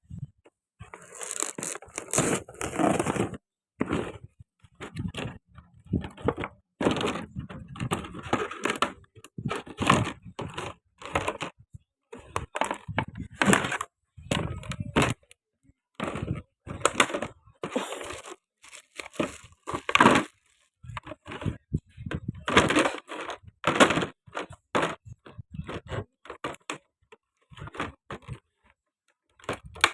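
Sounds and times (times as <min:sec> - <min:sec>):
cardboard and plastic crackling: 0:00.8 - 0:04.2, 0:16.0 - 0:21.6.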